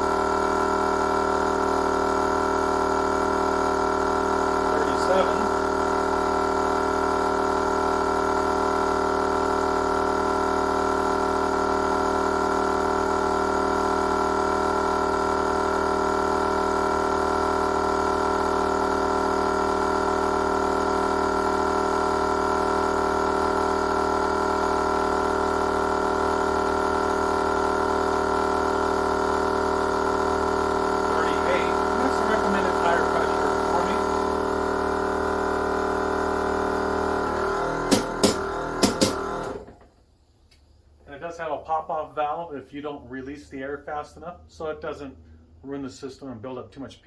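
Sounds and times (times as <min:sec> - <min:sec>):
air compressor humming: 0:00.0 - 0:41.1.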